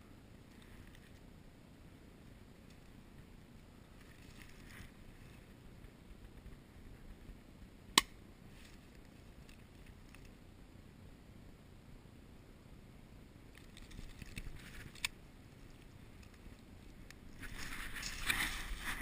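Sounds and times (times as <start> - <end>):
faint rustling: 2.1 - 7.7, 13.5 - 19.0.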